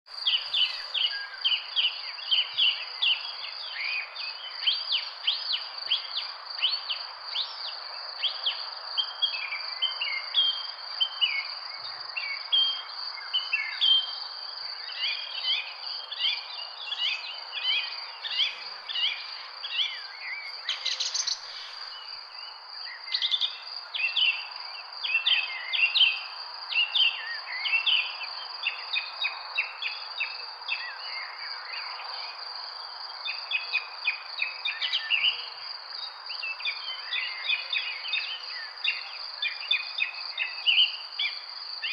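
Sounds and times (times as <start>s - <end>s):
birds chirping: 0.1s - 2.5s, 14.8s - 24.4s
insect trill: 0.1s - 41.9s.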